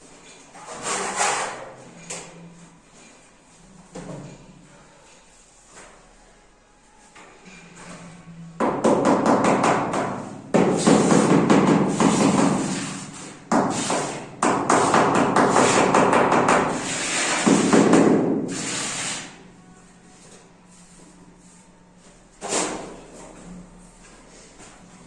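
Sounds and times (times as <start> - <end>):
hand tools scraping hard surface: 0.5 - 1.7, 10.8 - 19.4.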